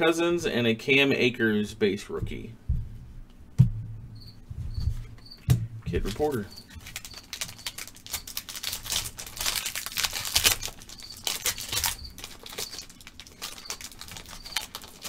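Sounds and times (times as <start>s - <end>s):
foil wrapper crinkling and tearing: 6.0s - 15.0s.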